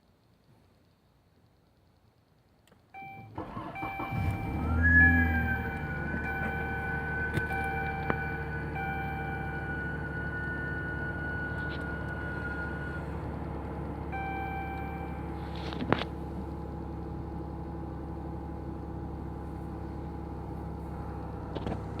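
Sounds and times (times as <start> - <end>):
brief steady tone: 3.0 - 13.4, 14.1 - 15.8
car engine idling: 3.3 - 22.0.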